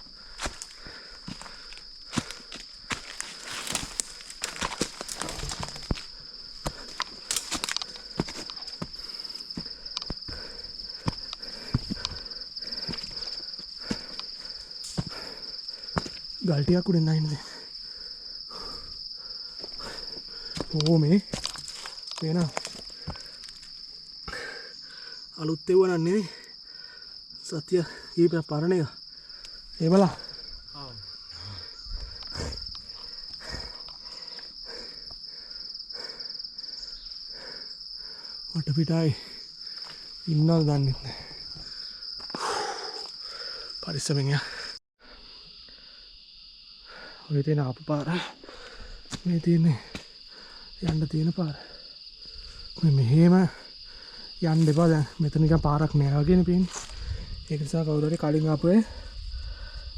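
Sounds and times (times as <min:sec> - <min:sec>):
footsteps on rocks and forest floor: 0:00.0 - 0:16.8, 0:18.6 - 0:24.2, 0:29.2 - 0:37.3, 0:39.2 - 0:43.8, 0:49.0 - 0:50.2, 0:54.4 - 0:55.2, 0:56.5 - 0:57.5
high-pitched insect chorus: 0:00.0 - 0:59.9.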